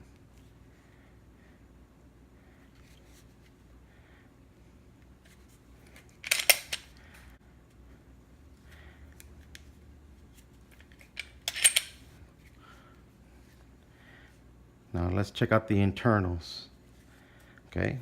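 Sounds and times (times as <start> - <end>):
pistol handling clicks and rattles: 5.9 - 7.0, 10.7 - 12.0.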